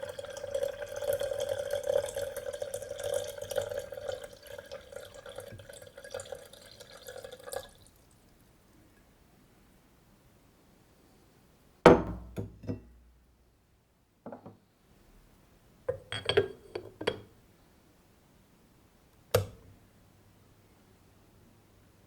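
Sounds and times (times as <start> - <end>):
ceramic kettle clunk: 11.9 - 12.9, 14.3 - 14.6, 15.9 - 17.3, 19.4 - 19.6
kettle switch click: 19.3 - 19.6.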